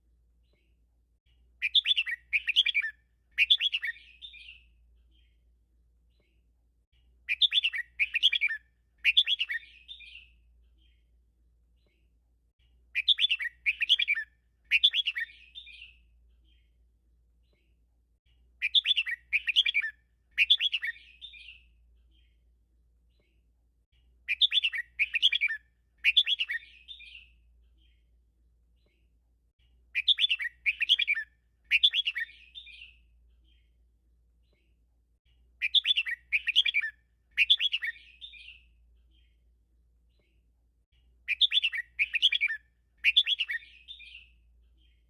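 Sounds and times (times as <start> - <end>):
bulbul singing: 1.6 - 5.3, 7.3 - 11.0, 13.0 - 16.7, 18.6 - 22.3, 24.3 - 28.0, 30.0 - 33.7, 35.6 - 39.4, 41.2 - 45.0.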